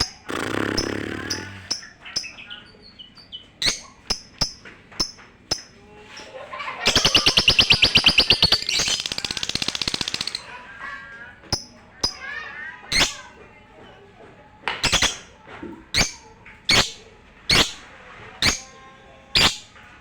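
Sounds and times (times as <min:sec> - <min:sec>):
bird chirping and trilling: 0:00.0 - 0:05.8, 0:06.8 - 0:10.5, 0:11.5 - 0:13.4, 0:14.8 - 0:15.3, 0:15.9 - 0:18.8, 0:19.4 - 0:19.8.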